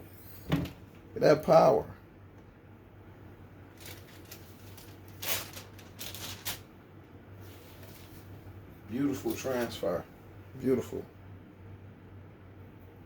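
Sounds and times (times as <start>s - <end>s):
faint low hum: 0.0s - 13.0s
paper rustling and crinkling: 3.7s - 6.7s, 7.4s - 8.4s.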